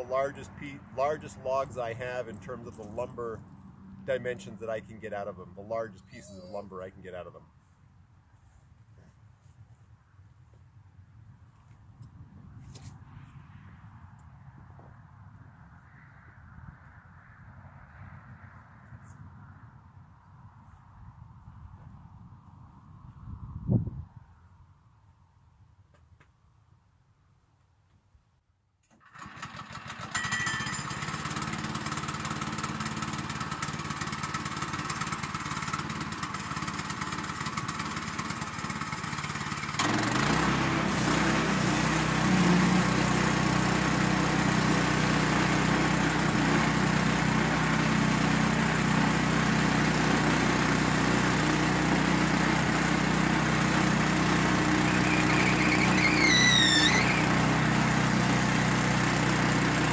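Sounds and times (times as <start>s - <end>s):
small gasoline engine running: 28.9s - 59.9s
rising and falling whistle: 54.9s - 57.3s.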